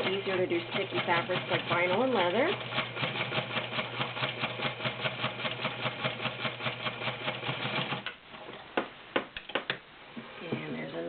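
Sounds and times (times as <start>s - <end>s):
sewing machine stitching: 0.0s - 8.1s.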